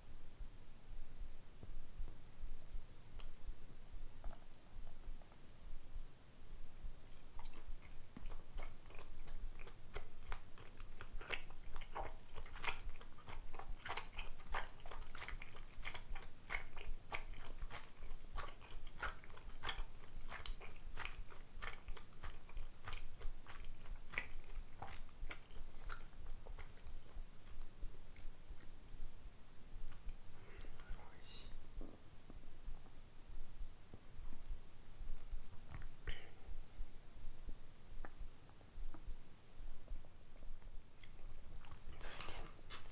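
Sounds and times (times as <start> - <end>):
close chewing with wet clicks: 3.1 - 6.0, 6.8 - 31.1, 37.2 - 42.9.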